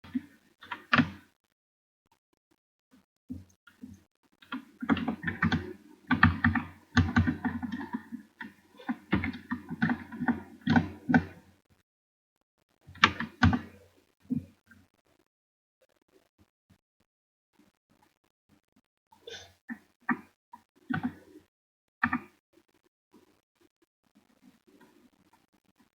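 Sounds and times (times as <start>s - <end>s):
quick taps and clicks: 3.3s - 11.4s.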